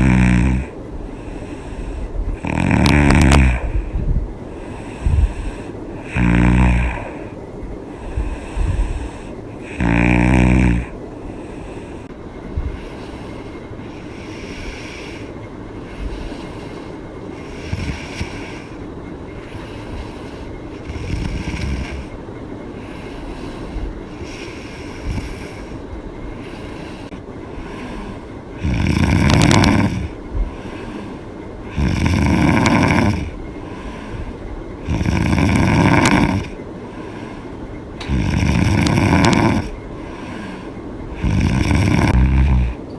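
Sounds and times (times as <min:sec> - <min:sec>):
woman snoring: 0:00.0 - 0:00.8, 0:02.4 - 0:03.9, 0:04.6 - 0:07.3, 0:08.2 - 0:12.1, 0:17.4 - 0:18.8, 0:20.8 - 0:22.2, 0:26.5 - 0:34.0, 0:34.8 - 0:36.6, 0:38.0 - 0:42.8
quiet breathing: 0:00.0 - 0:42.9.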